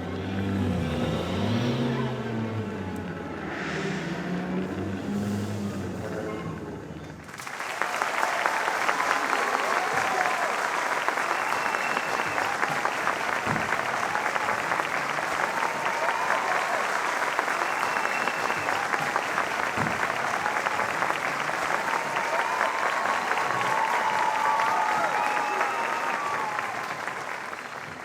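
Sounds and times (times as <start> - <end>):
crowd applause: 7.2 - 28.0.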